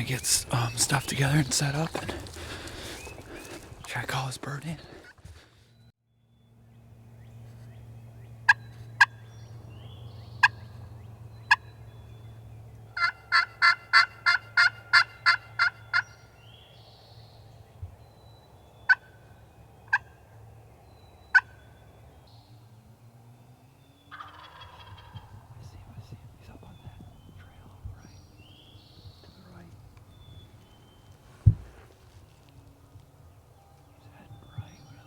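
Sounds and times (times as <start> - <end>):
turkey call clucks and yelps: 13.0 - 16.1, 24.1 - 25.3.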